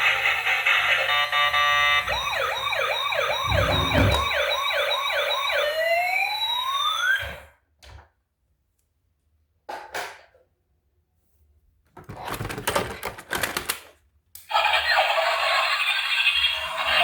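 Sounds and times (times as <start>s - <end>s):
electronic toy siren yelping: 0.0s - 7.4s
low thump: 3.5s - 4.4s.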